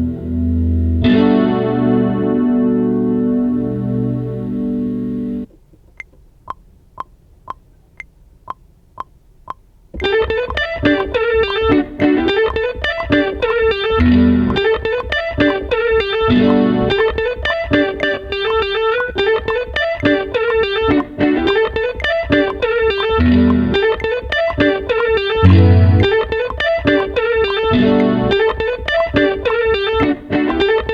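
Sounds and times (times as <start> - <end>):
plucked string melody with effects: 0.0 - 5.5, 10.0 - 30.9
evenly spaced clicks: 5.4 - 30.9
steady beat: 5.9 - 30.9
deep bass notes: 25.4 - 26.2.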